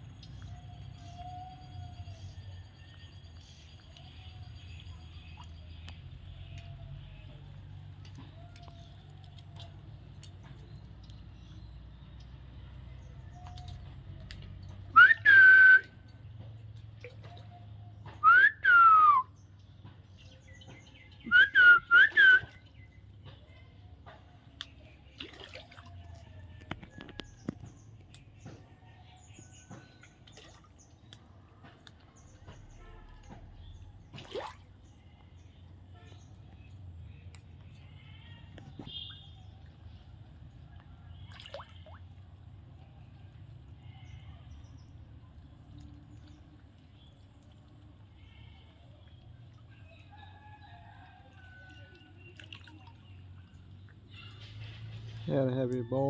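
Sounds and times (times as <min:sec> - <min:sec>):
bird whistling calls: 0:14.9 - 0:16.0, 0:18.2 - 0:19.4, 0:21.2 - 0:22.6.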